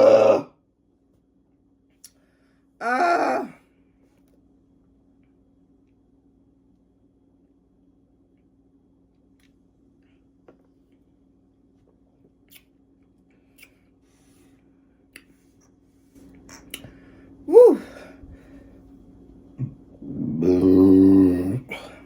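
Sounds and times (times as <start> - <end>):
woman exclaiming woo: 17.5 - 18.0.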